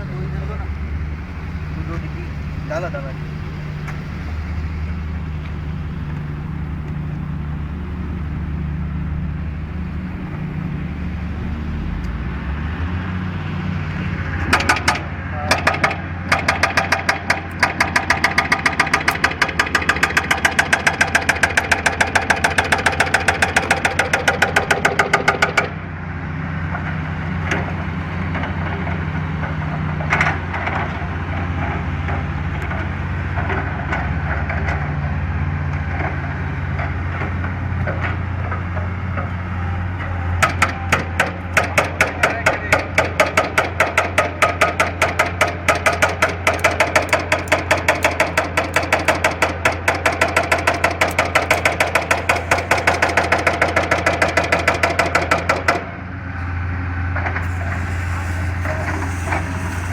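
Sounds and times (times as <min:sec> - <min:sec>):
steady engine drone: 0:00.0 - 0:59.9
power tool hammering rapidly: 0:14.5 - 0:25.7, 0:40.4 - 0:55.8.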